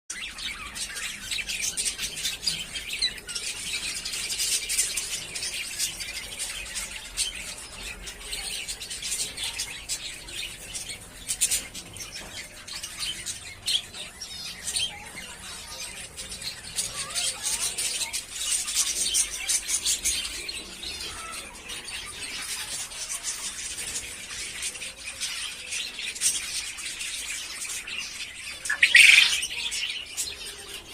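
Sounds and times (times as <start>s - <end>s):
birds chirping and chattering: 0.1s - 30.9s
loud bird call: 28.7s - 29.5s.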